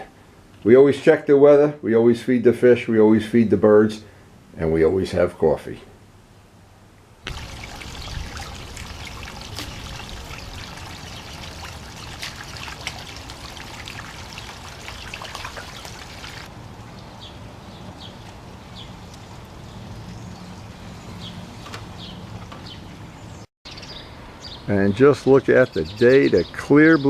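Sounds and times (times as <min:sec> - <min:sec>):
water trickling and splashing: 0:07.2 - 0:21.1
water drips and plops: 0:07.3 - 0:16.5.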